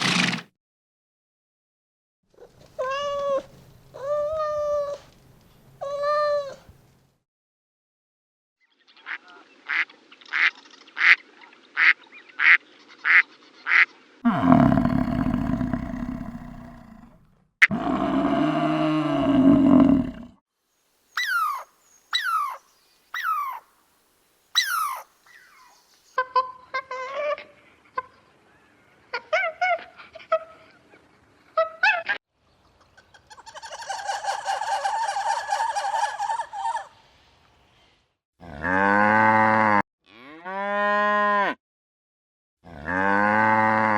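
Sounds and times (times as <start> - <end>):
long low animal calls: 14.3 - 20.4
falling chirps: 24.6 - 25.9.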